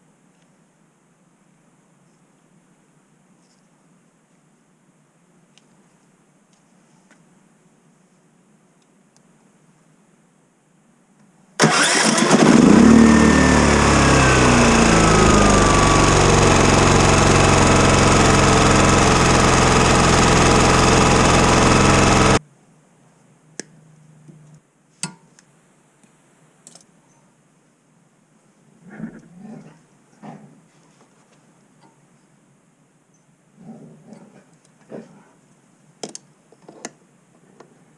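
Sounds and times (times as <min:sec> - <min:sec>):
generator engine running: 0:11.6 - 0:22.4.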